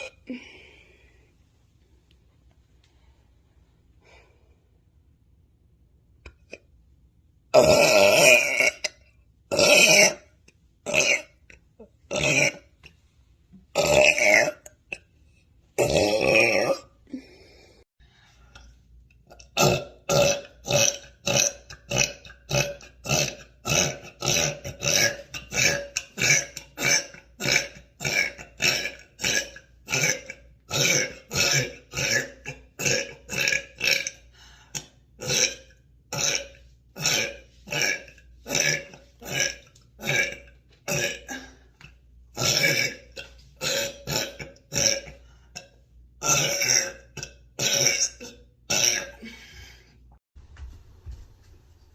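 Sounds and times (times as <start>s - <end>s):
woman burping: 0.0s - 0.5s, 7.5s - 12.7s, 13.8s - 15.0s, 15.8s - 17.3s, 19.3s - 34.2s, 35.2s - 41.8s, 42.4s - 49.6s.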